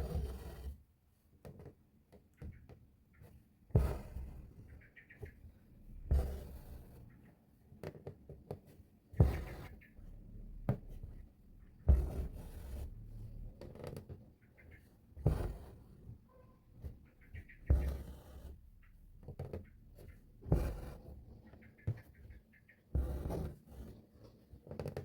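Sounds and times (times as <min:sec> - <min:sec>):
needle tapping through fabric: 0:01.4 - 0:02.9, 0:03.7 - 0:04.5, 0:06.0 - 0:14.3, 0:15.1 - 0:16.0, 0:16.8 - 0:24.0, 0:24.6 - 0:25.0.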